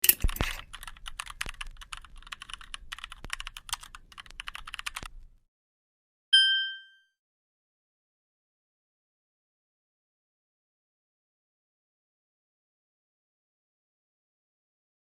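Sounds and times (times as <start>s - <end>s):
computer keyboard typing: 0.0s - 5.2s
high chime: 6.4s - 7.1s.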